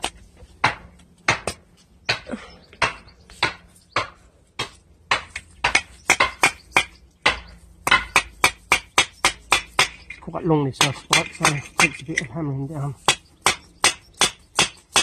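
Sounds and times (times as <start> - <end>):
hammer striking metal rod: 2.8 - 12.3, 13.1 - 15.0.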